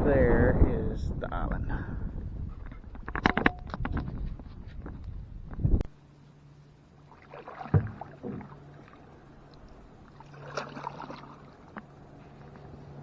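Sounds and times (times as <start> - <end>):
paddle splashing and dripping: 6.9 - 12.7
paddle knocking hull: 7.2 - 9.1.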